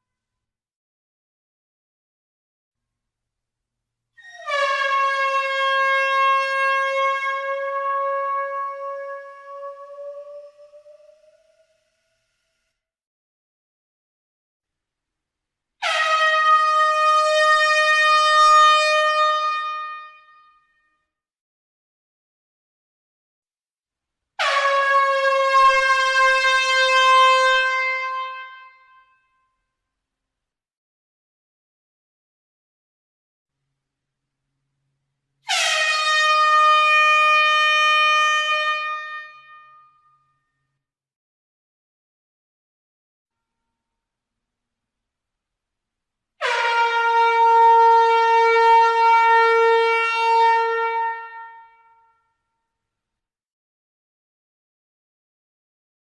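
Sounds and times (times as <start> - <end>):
air horn blast: 24.4 - 28.8, 35.5 - 39.8, 46.4 - 52.0.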